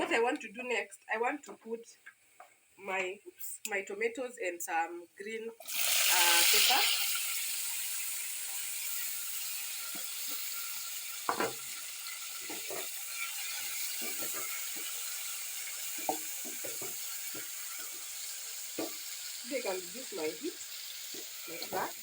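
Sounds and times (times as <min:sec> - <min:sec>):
vegetables sizzling in a pan: 0:05.6 - 0:22.0
spoon stirring and knocking pot: 0:11.3 - 0:19.1.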